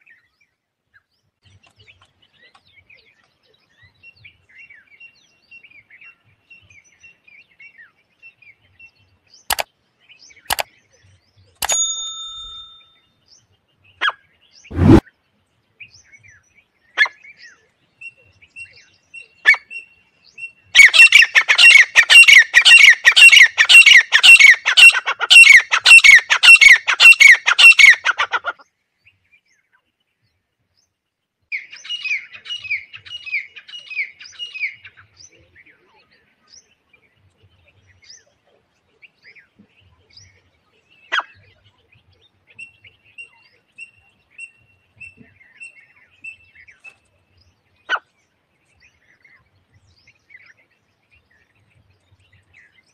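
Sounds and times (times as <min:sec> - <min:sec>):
single bird chirps: 0:09.5 - 0:09.7, 0:10.5 - 0:10.7.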